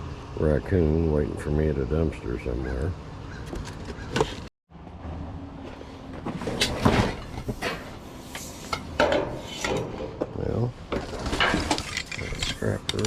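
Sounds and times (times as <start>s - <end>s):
hard objects knocking and clattering: 10.9s - 13.0s.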